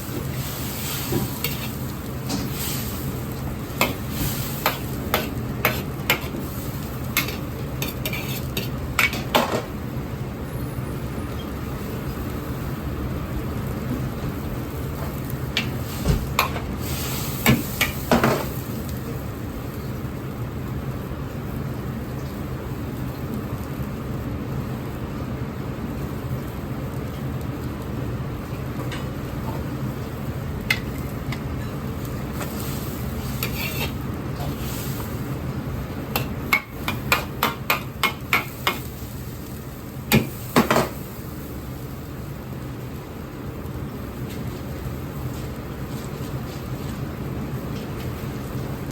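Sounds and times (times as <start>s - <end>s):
gas burners and exhaust roaring: 0.0s - 48.9s
low kitchen rumble: 0.0s - 48.9s
utensils clanking against a wok: 0.8s - 2.8s, 3.8s - 6.5s, 7.1s - 9.7s, 32.4s - 34.7s, 36.1s - 38.9s.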